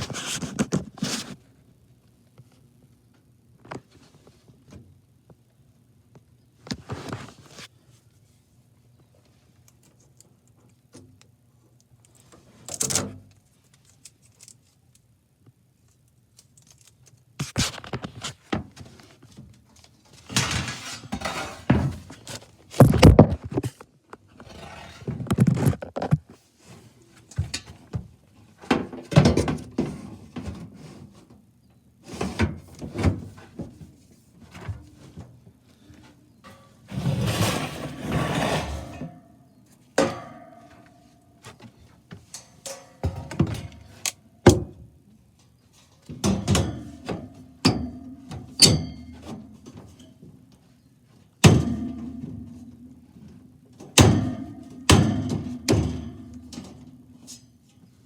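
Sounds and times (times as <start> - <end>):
hard objects knocking and clattering: 20.4 - 23.8.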